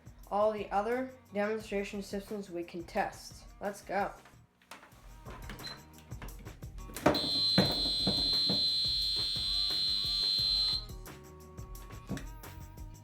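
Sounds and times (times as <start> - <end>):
fire alarm high-pitched tone: 7.1 - 10.9.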